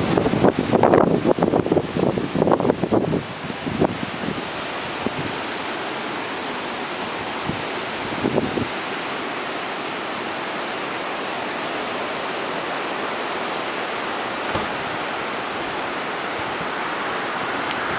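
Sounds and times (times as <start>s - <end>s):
storm wind rushing: 0.0s - 5.8s, 7.0s - 8.9s, 11.5s - 17.9s.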